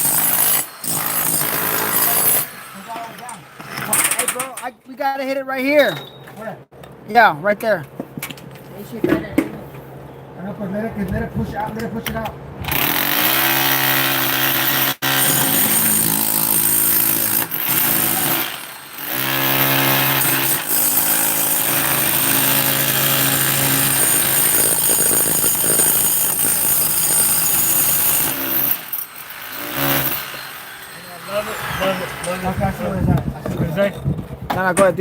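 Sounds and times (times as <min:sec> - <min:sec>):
jackhammer running: 0:00.0 - 0:02.5, 0:12.7 - 0:32.5.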